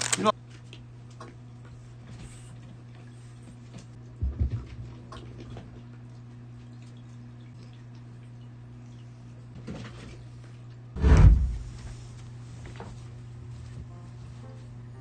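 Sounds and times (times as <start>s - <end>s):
steady low hum: 0.0s - 15.0s
loud low thump: 11.0s - 11.8s.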